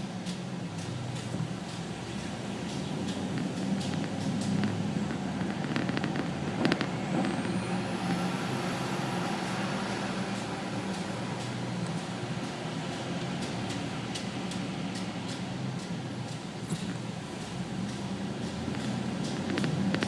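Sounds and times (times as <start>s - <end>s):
truck engine running: 0.0s - 20.0s.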